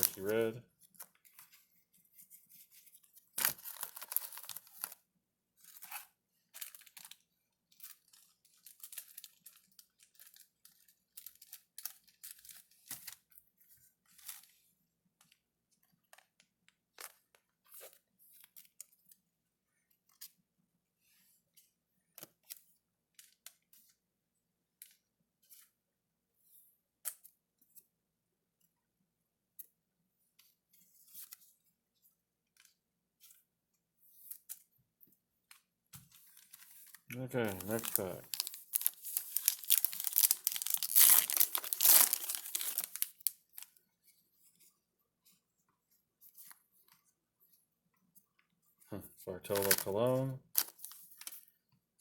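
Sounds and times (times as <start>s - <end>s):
cards and foil wrappers rustling: 0.0s - 1.6s, 2.2s - 5.0s, 5.6s - 13.4s, 36.0s - 43.8s, 49.4s - 51.5s.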